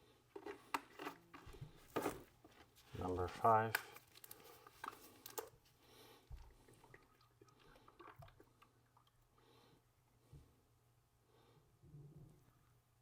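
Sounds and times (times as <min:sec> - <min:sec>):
plastic bottle clicks and crinkles: 0:00.3 - 0:02.3, 0:03.3 - 0:05.6.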